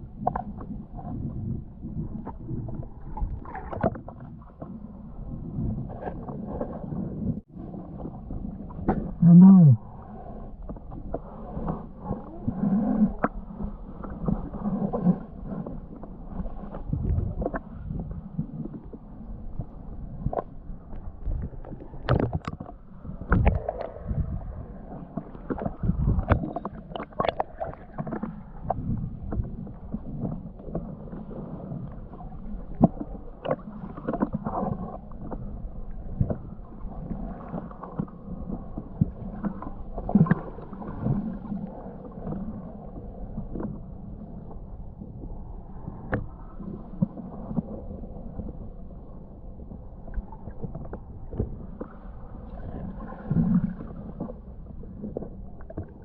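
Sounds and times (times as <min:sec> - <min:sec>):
muffled underwater sloshing: 0:00.0 - 0:56.0
underwater knocks and clunks: 0:00.2 - 0:04.8, 0:05.5 - 0:09.2, 0:16.7 - 0:19.0, 0:19.6 - 0:43.8, 0:49.7 - 0:52.0, 0:52.7 - 0:56.0.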